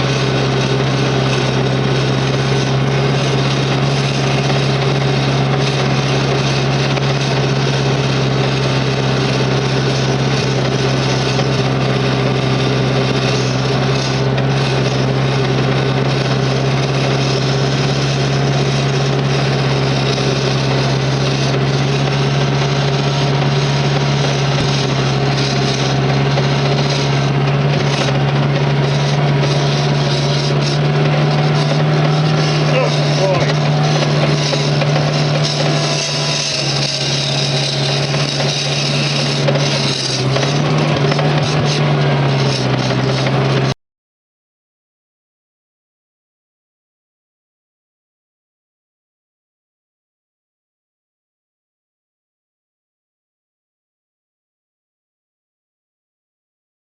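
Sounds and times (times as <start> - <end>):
skid steer engine running: 0.0 - 43.8.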